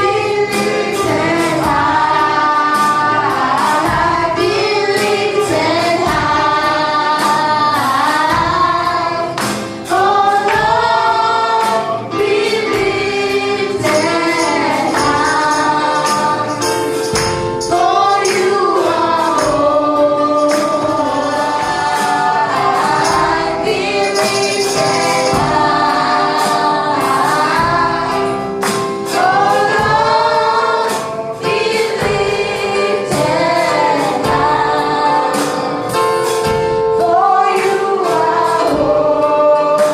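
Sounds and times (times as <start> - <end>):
group singing gospel: 0.0 - 39.9
instrumental backing: 0.0 - 39.9
percussion hits: 0.0 - 39.9.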